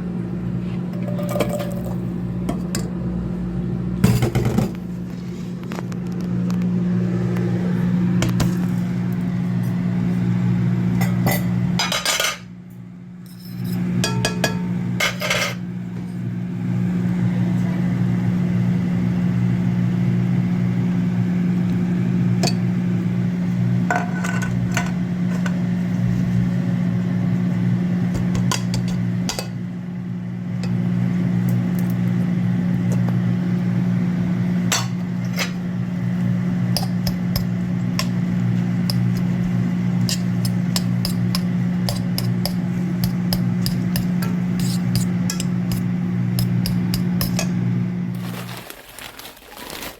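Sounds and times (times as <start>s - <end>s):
steady low hum: 0.0s - 48.6s
dishes and utensils clinking: 11.0s - 12.5s, 13.3s - 15.6s.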